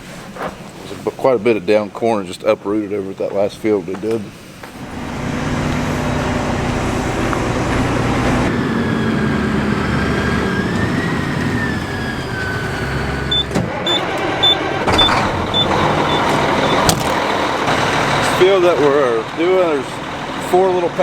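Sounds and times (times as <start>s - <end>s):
heavy vehicle engine running: 4.6s - 21.0s
thin whine: 4.8s - 16.9s
high warning beeps: 13.3s - 16.9s.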